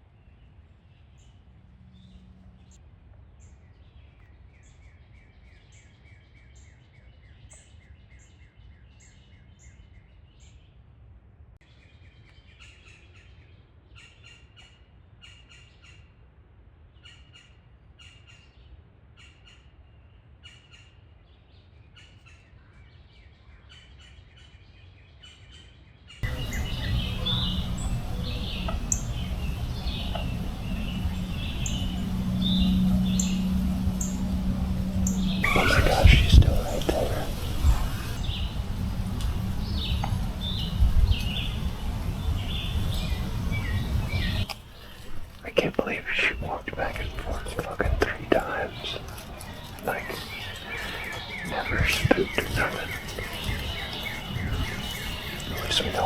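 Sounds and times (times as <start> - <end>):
songbirds chirping and singing: 26.2 - 56.0
steady low hum: 26.2 - 56.0.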